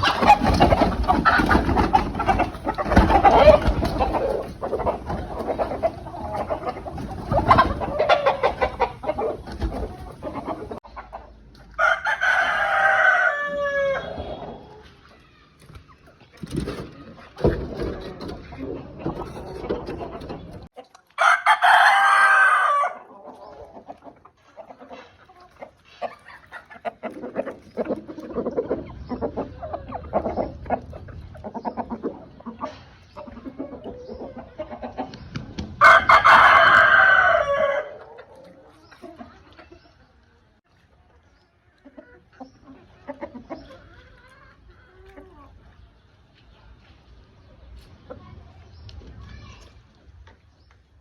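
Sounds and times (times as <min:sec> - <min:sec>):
chickens clucking: 0:00.0 - 0:51.0
rooster crowing: 0:11.8 - 0:14.1, 0:21.2 - 0:23.1, 0:35.8 - 0:38.0.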